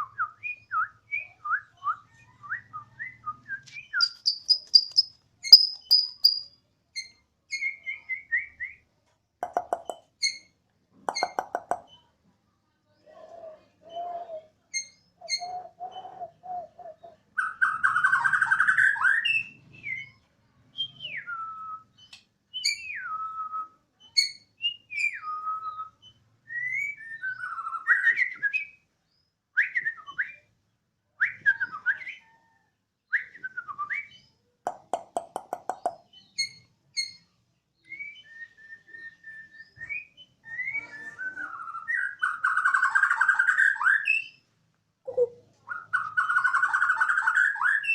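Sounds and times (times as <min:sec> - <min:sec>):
bird whistling song: 0:00.0 - 0:08.8, 0:13.8 - 0:20.2, 0:20.8 - 0:28.9, 0:29.6 - 0:30.5, 0:31.2 - 0:32.5, 0:33.1 - 0:34.4, 0:36.0 - 0:44.5, 0:45.1 - 0:47.9
harsh scratchy bird calls: 0:03.9 - 0:06.5
bird fast rattle: 0:04.0 - 0:06.4.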